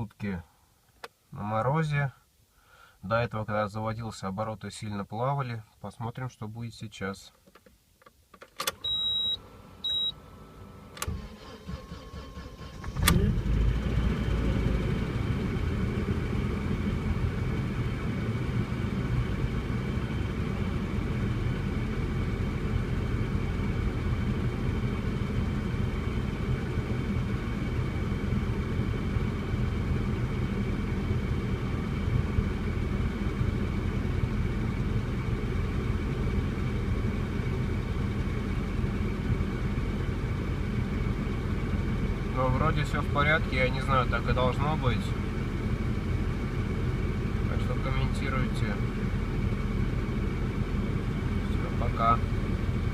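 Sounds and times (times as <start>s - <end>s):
ignition click: 7.5s - 10.1s, 10.9s - 13.4s
car engine starting and idling: 8.4s - 52.9s.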